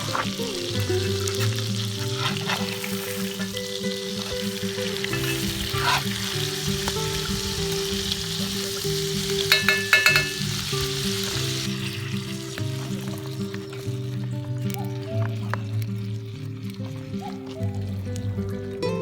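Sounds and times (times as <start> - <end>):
background music: 0.0 - 19.0
food sizzling: 0.0 - 19.0
metallic clinks: 9.5 - 10.5.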